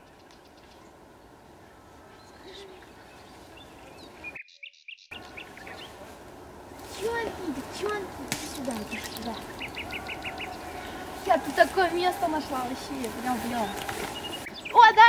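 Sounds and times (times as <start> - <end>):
bird chirps: 2.1 - 6.1, 8.5 - 11.2, 12.6 - 15.0
steady background hiss: 5.2 - 15.0.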